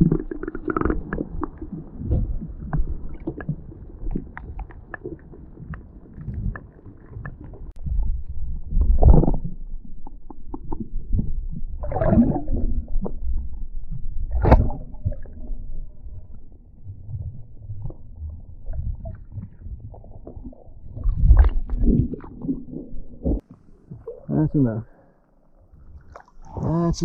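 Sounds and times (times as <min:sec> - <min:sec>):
water sloshing and splashing: 0:00.0 - 0:24.4, 0:25.6 - 0:27.0.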